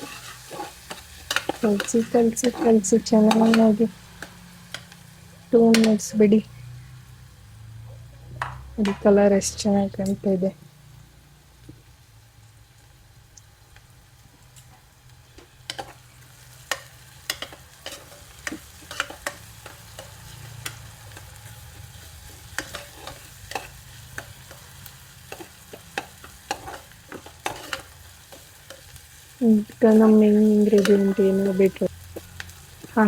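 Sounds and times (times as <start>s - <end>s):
spoon scraping a pot: 0.0s - 3.9s, 15.7s - 16.0s, 16.6s - 29.1s, 29.9s - 33.0s
onions sizzling in a pot: 0.0s - 33.0s.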